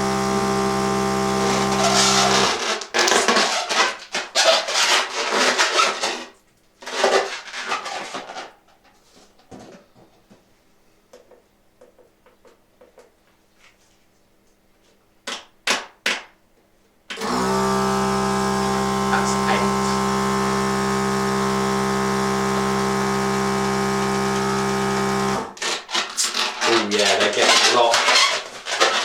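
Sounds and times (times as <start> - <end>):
electric balloon pump humming: 0.0 - 3.2, 17.2 - 25.8
rubber balloons rubbing and rustling: 0.0 - 9.3, 18.9 - 29.0.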